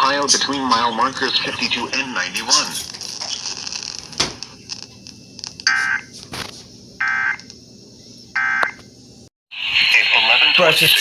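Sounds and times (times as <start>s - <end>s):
faint radio hiss: 0.0s - 5.5s, 9.6s - 11.0s.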